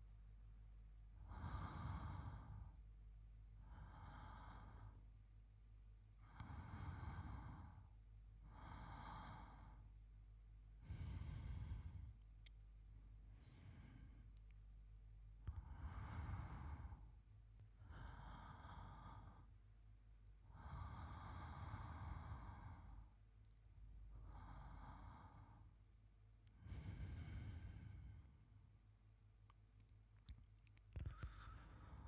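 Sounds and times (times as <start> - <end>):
man breathing softly in sleep: 1.1 - 5.3, 6.1 - 10.1, 10.7 - 14.6, 15.4 - 23.2, 24.1 - 28.6, 30.9 - 32.0.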